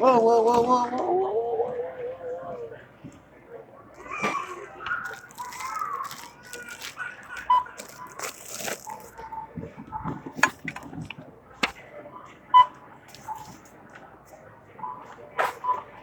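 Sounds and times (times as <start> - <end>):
plastic bags rustling: 4.1 - 11.2
barcode scanner beeps: 7.4 - 8.2.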